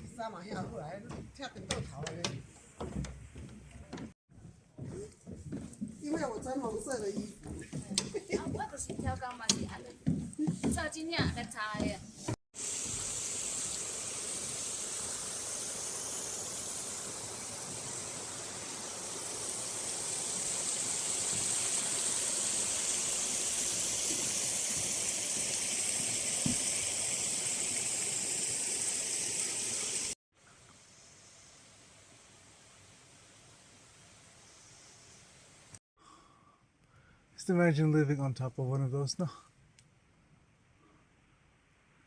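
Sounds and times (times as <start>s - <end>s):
high-pitched hiss: 12.6s - 35.8s.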